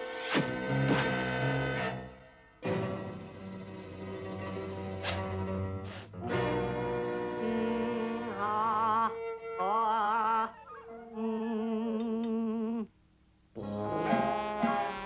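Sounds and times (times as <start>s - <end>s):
cartoon music with held notes: 13.6s - 15.0s.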